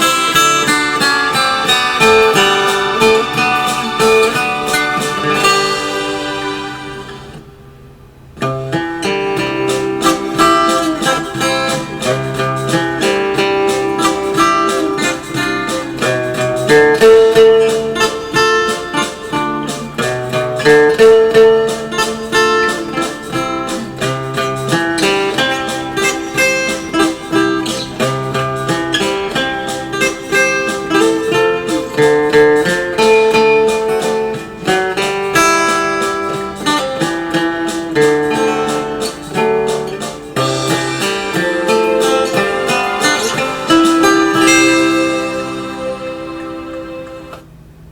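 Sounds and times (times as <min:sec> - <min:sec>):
plucked acoustic guitar melody: 0:00.0 - 0:47.9.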